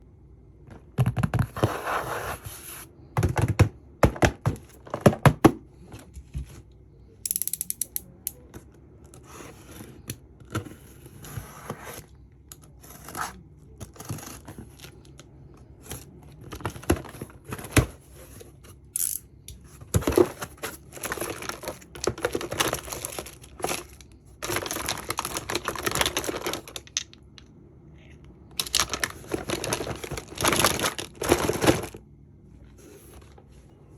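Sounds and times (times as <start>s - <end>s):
plastic and paper crinkling: 19.6s - 27.2s, 28.5s - 32.0s.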